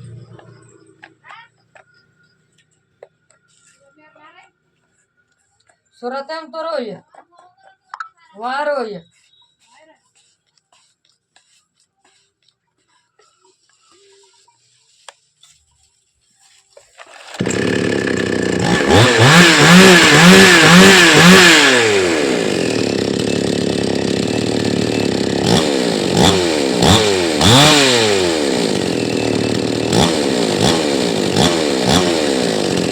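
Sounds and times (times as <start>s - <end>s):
chainsaw engine revving: 17.0s - 32.9s.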